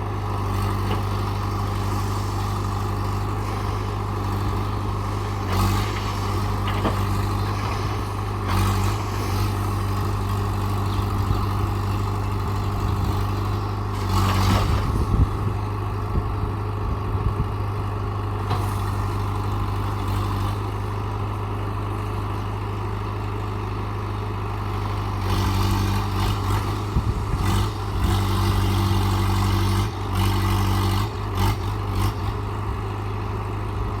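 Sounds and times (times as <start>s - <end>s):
diesel engine running: 0.0s - 34.0s.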